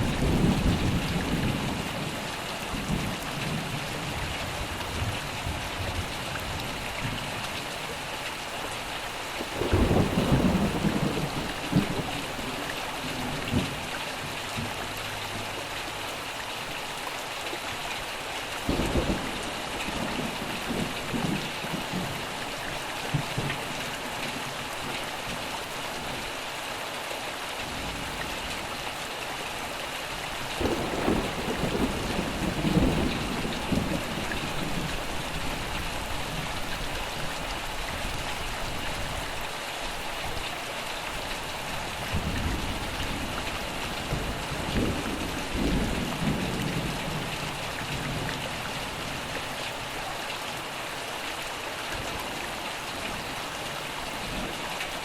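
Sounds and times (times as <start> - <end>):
steady rain falling: 0.0 - 55.0
thunder rumbling: 9.4 - 15.5, 30.6 - 36.6, 42.1 - 49.0.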